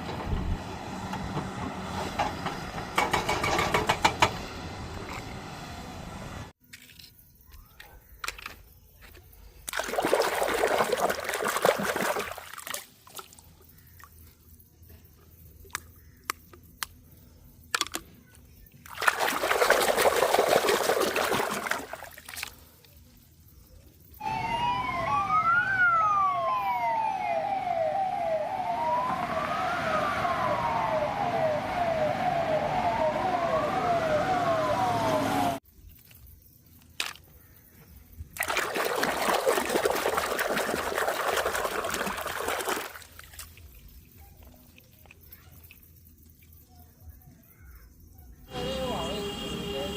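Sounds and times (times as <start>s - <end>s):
running water bursts: 9.7s - 13.3s, 18.9s - 22.7s, 38.4s - 43.9s
electronic toy siren wailing: 24.2s - 35.6s.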